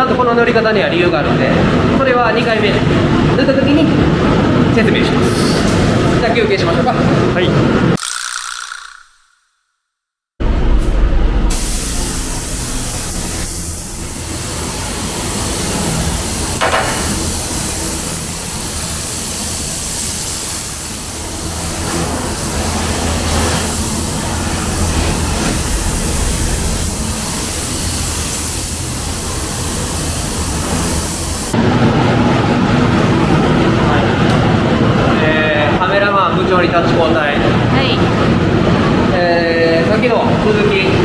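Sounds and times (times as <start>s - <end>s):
low fan hum: 10.4s - 41.0s
paint spray gun hissing: 11.5s - 31.6s.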